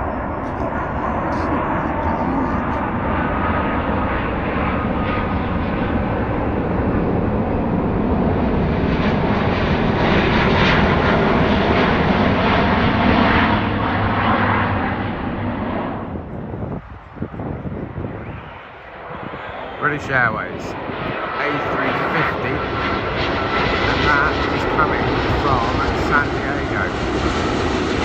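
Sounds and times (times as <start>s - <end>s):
jet engines passing: 0.0s - 28.0s.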